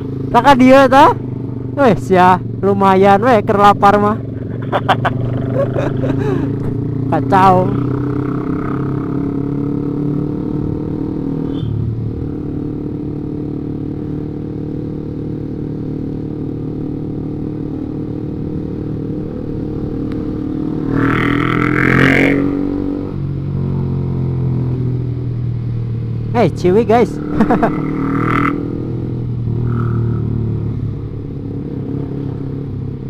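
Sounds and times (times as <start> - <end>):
motorcycle engine running: 0.0 - 33.0.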